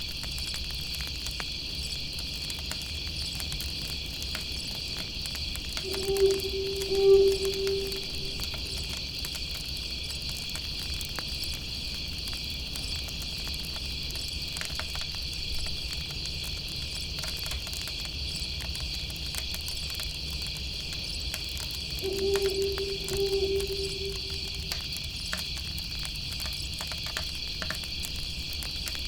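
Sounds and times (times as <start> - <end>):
insects chirring: 5.9 - 8.9, 22.0 - 25.0
low rumble: 5.9 - 8.9, 22.0 - 25.0.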